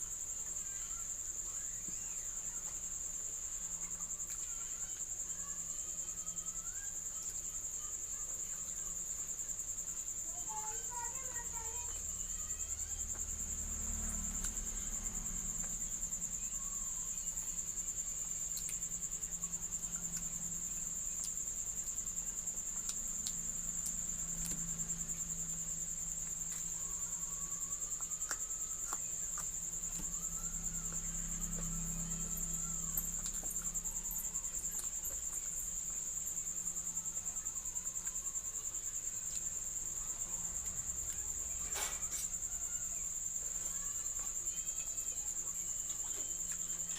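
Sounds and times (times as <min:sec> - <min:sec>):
insects chirring: 0:00.0 - 0:46.9
low hum: 0:29.3 - 0:34.8.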